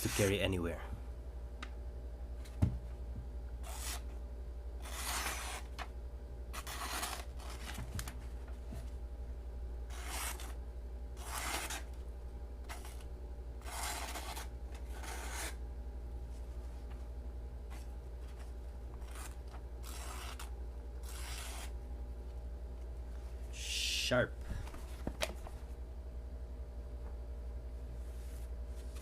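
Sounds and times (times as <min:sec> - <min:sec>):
low hum: 0:00.0 - 0:29.0
knife slicing paper pages: 0:03.6 - 0:04.1, 0:04.8 - 0:05.9, 0:06.5 - 0:08.2, 0:09.9 - 0:10.6, 0:11.2 - 0:12.0, 0:12.7 - 0:15.6, 0:17.7 - 0:21.8.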